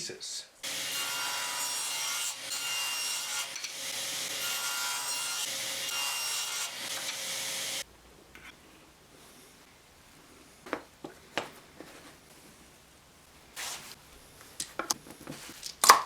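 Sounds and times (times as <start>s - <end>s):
saw cutting wood: 0.6s - 7.8s.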